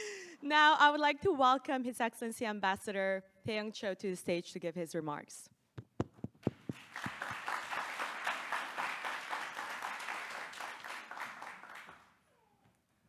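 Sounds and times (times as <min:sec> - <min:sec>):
audience applauding: 0:06.5 - 0:12.2.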